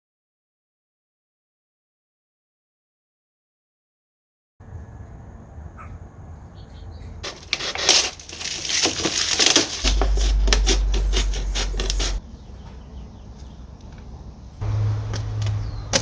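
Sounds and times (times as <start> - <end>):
crackling and rustling: 7.1 - 12.2
deep rumble: 9.8 - 12.5.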